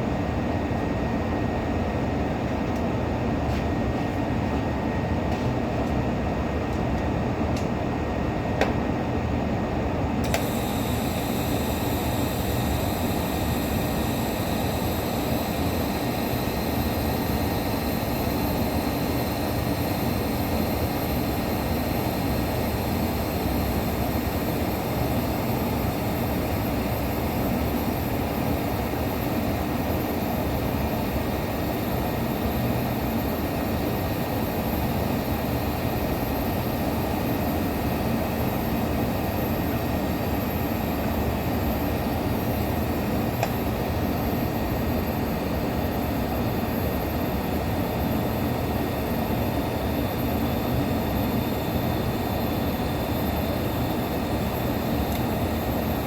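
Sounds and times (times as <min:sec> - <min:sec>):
steady mechanical noise: 0:00.0 - 0:56.0
high-pitched whine: 0:10.4 - 0:29.6.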